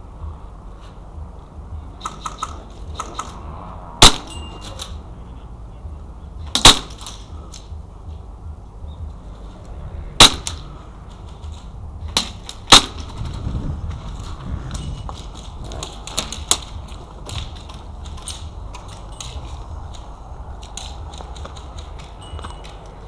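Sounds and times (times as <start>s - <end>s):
airsoft pistol shots: 4.0s - 4.8s, 6.5s - 7.3s, 10.2s - 10.7s, 12.2s - 13.2s.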